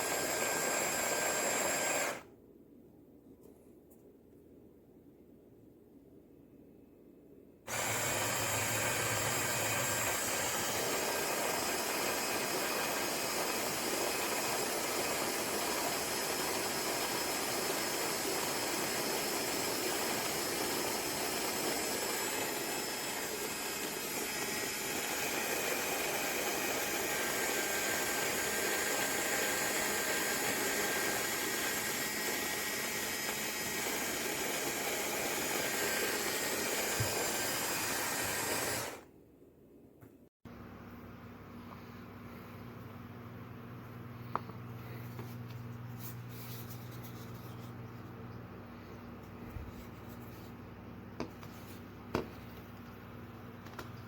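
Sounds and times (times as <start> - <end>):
electric coffee grinder whirring: 0.0 - 2.2, 7.7 - 39.0.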